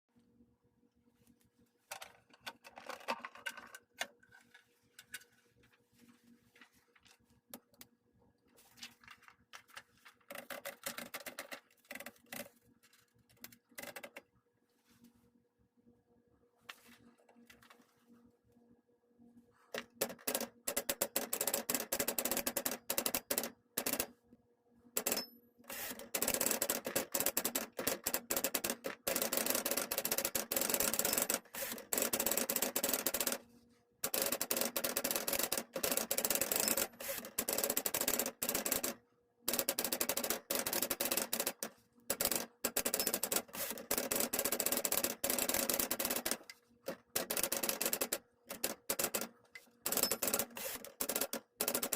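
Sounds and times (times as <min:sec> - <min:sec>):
manual typewriter keys clacking: 0:34.0 - 0:49.3, 0:49.9 - 0:51.9.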